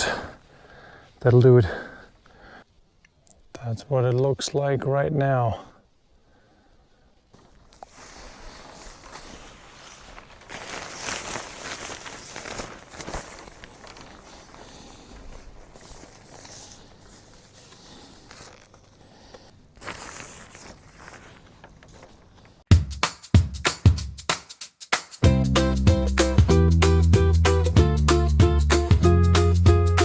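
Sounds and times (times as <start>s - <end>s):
rustling: 7.2s - 22.7s
footsteps: 7.3s - 22.6s.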